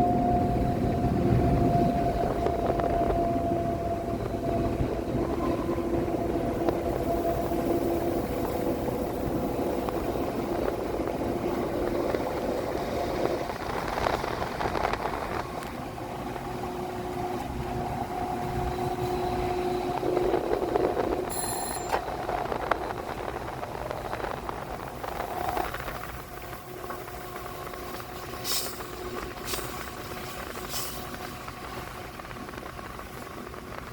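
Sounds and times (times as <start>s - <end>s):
train passing with rumble: 0.0s - 33.9s
brief high-pitched ring: 21.3s - 22.1s.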